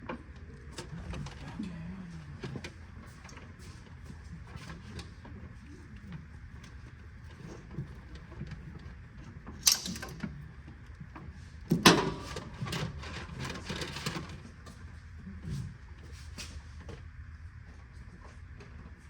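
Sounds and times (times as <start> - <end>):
low steady hum: 0.0 - 3.5
tools clattering and rattling: 9.5 - 10.4.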